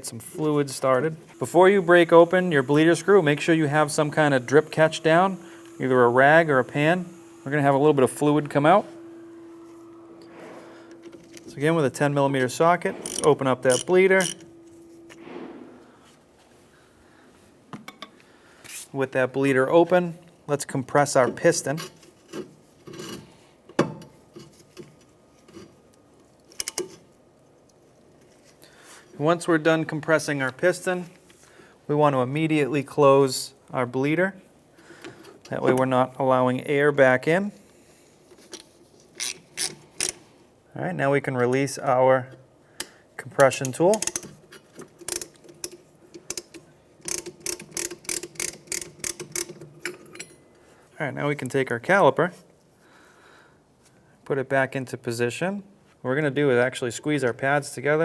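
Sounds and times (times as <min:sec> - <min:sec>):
sharp metallic clicks of tool: 0:45.0 - 0:49.6.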